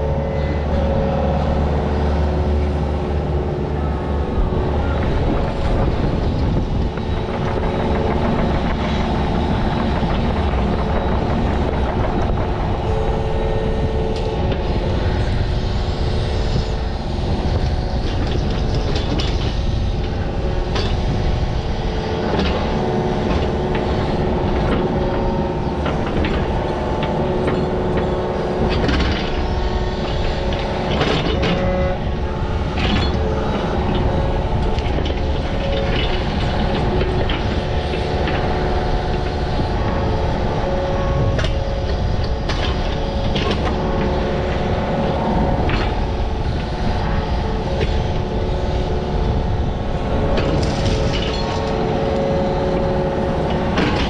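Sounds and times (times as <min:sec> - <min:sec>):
excavator diesel engine: 0:00.0 - 0:54.0
hydraulic drone: 0:00.0 - 0:54.0.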